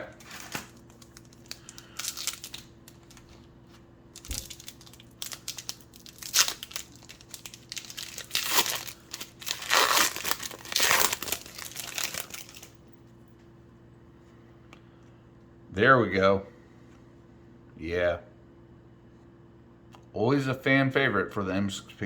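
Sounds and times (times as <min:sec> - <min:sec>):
foil wrapper tearing and crinkling: 0:00.0 - 0:03.4, 0:04.1 - 0:12.8.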